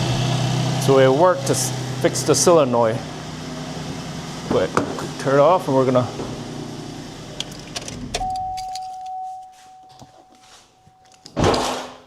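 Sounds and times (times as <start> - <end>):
car keys jingling: 7.3 - 11.4
steady electronic beep: 8.2 - 11.2.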